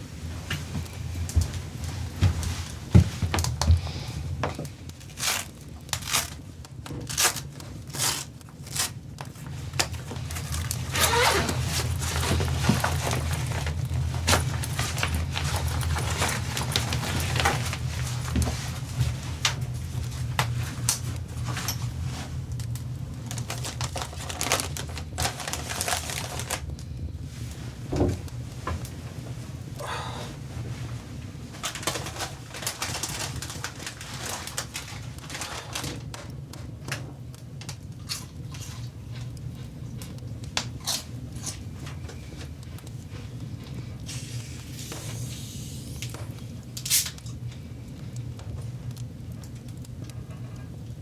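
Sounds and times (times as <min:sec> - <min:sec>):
steady low hum: 0:00.0 - 0:51.0
objects being handled: 0:02.2 - 0:22.4
scraping rustle: 0:04.6 - 0:26.7, 0:30.6 - 0:36.1.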